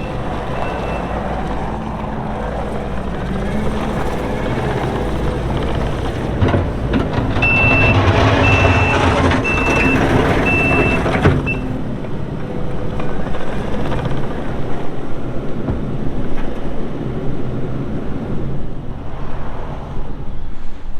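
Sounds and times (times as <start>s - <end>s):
diesel engine running: 0.0s - 16.2s
backup alarm beeping: 7.4s - 11.7s.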